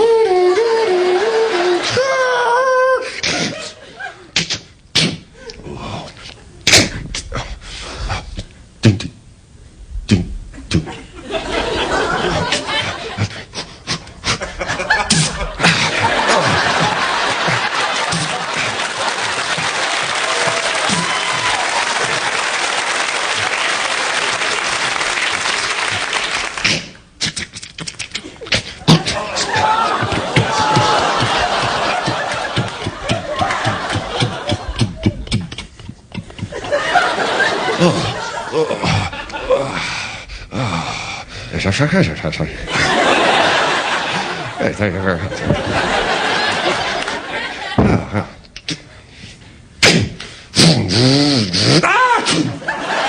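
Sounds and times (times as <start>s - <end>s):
vocal slam and thud effects: 15.1s - 15.9s, 47.8s - 48.1s, 49.8s - 50.9s
audience applauding: 15.7s - 26.9s, 29.3s - 34.9s, 45.7s - 47.5s
scattered claps: 16.8s - 27.0s, 29.9s - 36.5s.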